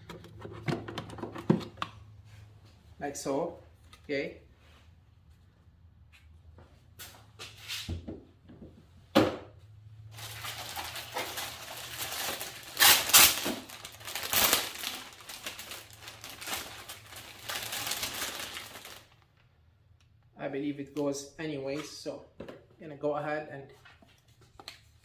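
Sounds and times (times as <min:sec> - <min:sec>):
packaging crinkling and rustling: 0:10.1 - 0:19.4.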